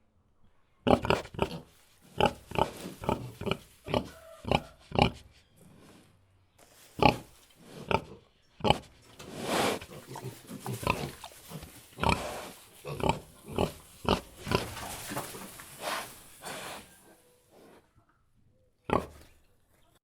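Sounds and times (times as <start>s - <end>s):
pig grunting: 0.9s - 5.2s, 7.0s - 17.0s, 18.9s - 19.3s.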